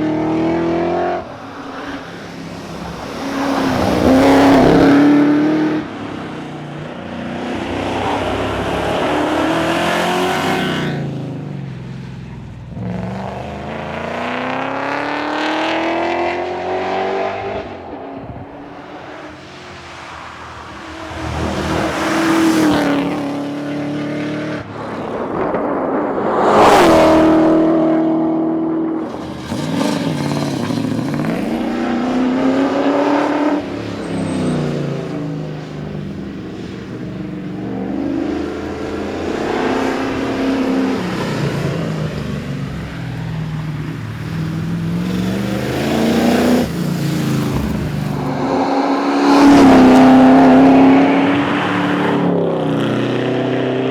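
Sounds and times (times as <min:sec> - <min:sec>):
car engine revving hard: 0:00.0 - 0:11.3, 0:12.8 - 0:24.8, 0:26.5 - 0:53.9.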